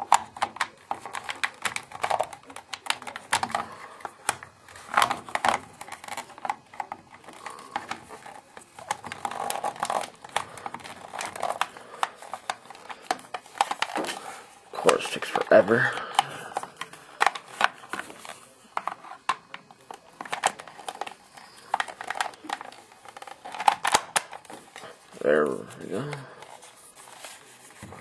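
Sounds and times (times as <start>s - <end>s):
plastic toy parts clicking: 0.0s - 14.2s, 14.8s - 27.4s.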